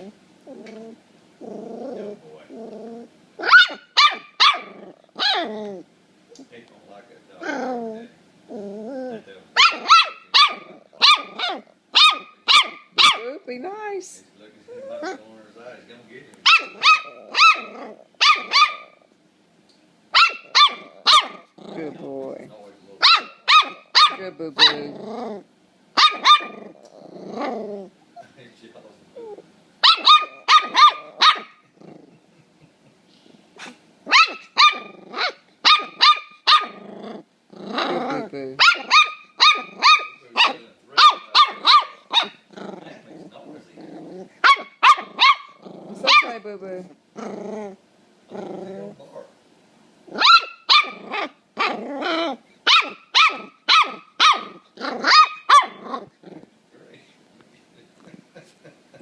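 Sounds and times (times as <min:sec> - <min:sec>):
growly bark: 0:00.0 - 0:05.8, 0:07.4 - 0:13.3, 0:16.4 - 0:19.0, 0:20.2 - 0:27.9, 0:29.2 - 0:32.3, 0:33.6 - 0:49.4, 0:50.1 - 0:56.5
puppy yapping: 0:00.0 - 0:05.8, 0:07.4 - 0:13.3, 0:14.7 - 0:15.3, 0:16.4 - 0:19.0, 0:20.1 - 0:21.9, 0:23.0 - 0:25.4, 0:26.0 - 0:28.3, 0:29.2 - 0:31.9, 0:33.6 - 0:42.8, 0:44.2 - 0:46.4, 0:50.1 - 0:56.2.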